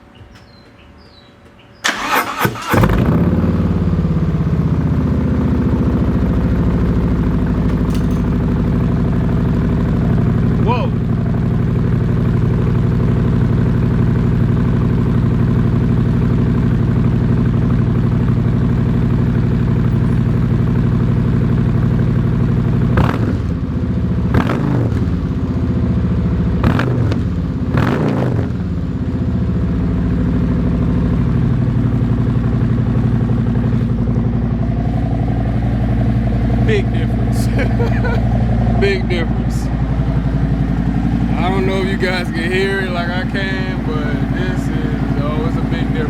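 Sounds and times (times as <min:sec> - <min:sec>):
motorcycle engine idling: 0:00.0 - 0:24.4, 0:25.0 - 0:26.6, 0:27.2 - 0:27.7, 0:28.6 - 0:46.0
motorcycle throttle blips: 0:00.1 - 0:46.0.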